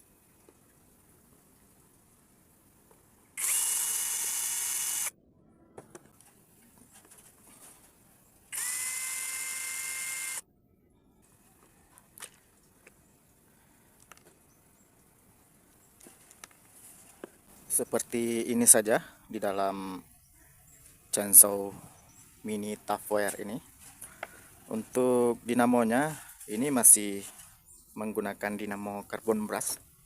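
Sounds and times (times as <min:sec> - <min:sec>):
power tool motor whining: 0:03.4 - 0:05.2, 0:08.5 - 0:10.4.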